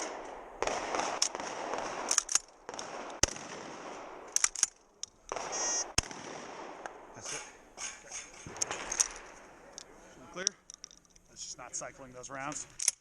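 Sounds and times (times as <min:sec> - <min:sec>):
gunshots: 0:00.0 - 0:04.7, 0:05.3 - 0:07.6, 0:08.4 - 0:09.7
faint sharp cracks: 0:00.0 - 0:11.4.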